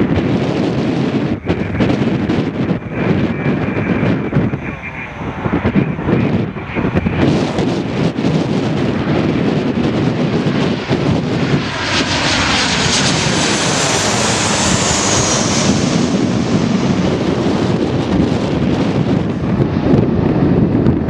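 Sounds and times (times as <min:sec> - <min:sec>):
jet airliner passing: 0:00.0 - 0:21.0
wind buffeting microphone: 0:00.0 - 0:21.0.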